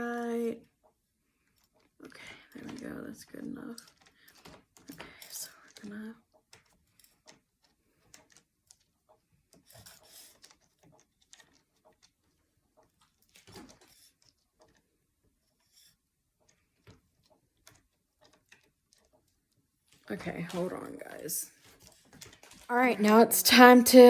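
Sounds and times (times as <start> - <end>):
tripod clicks and rubbing: 9.6 - 12.2.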